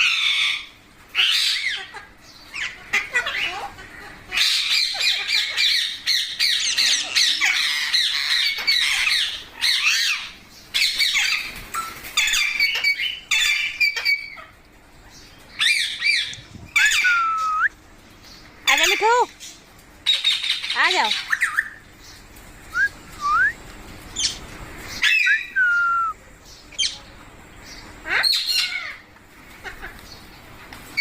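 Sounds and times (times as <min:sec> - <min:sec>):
parrot squawking and screeching: 0:00.0 - 0:11.6, 0:12.2 - 0:14.5, 0:15.6 - 0:17.6, 0:18.7 - 0:19.3, 0:25.0 - 0:25.6, 0:28.0 - 0:29.0.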